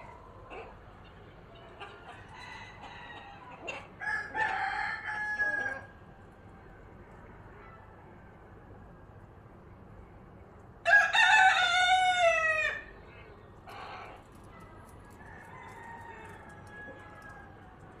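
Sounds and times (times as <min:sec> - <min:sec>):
rooster crowing: 0:02.3 - 0:05.9, 0:10.8 - 0:12.9, 0:15.2 - 0:17.8.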